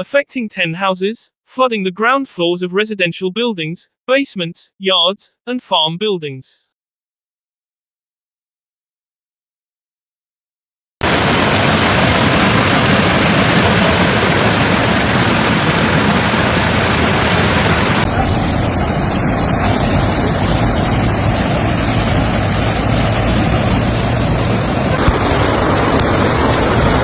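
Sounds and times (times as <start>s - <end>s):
floodwater rushing: 11.0s - 27.0s.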